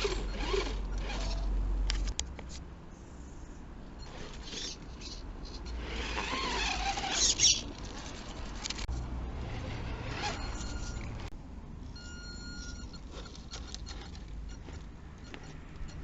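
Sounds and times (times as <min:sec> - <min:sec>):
rc car driving through mud: 0:00.0 - 0:01.5, 0:04.0 - 0:08.8, 0:09.4 - 0:11.0.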